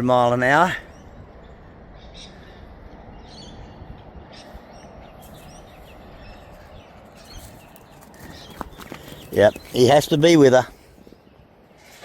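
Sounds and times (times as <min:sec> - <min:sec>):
outdoor background rush: 0:00.0 - 0:12.0
bird chirps: 0:00.8 - 0:10.2.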